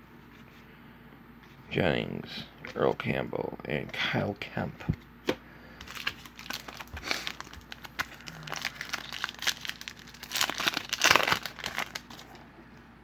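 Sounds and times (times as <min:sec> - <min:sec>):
card pack wrapper tearing and crinkling: 0:05.8 - 0:12.4.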